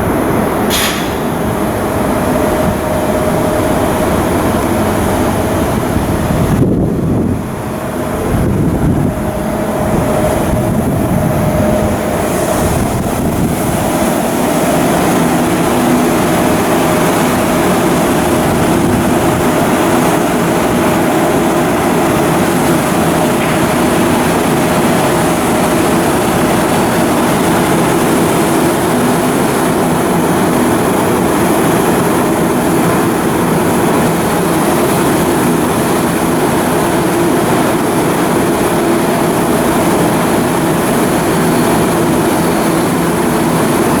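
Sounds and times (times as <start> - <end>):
heavy machinery drone: 0.0 - 44.0
steady hum: 0.0 - 44.0.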